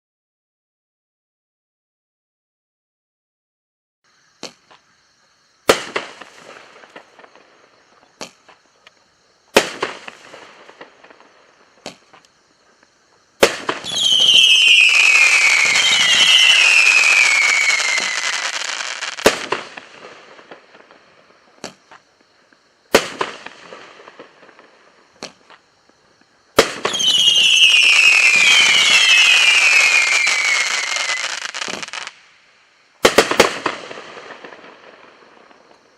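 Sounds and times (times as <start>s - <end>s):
firework bangs with crackle: 5.6s - 8.6s, 9.5s - 12.3s, 13.3s - 22.0s, 22.9s - 25.6s, 26.5s - 32.4s, 33.0s - 35.9s
firework hissing: 13.4s - 20.4s, 26.6s - 32.4s
falling whistles: 13.8s - 19.2s, 26.9s - 32.2s.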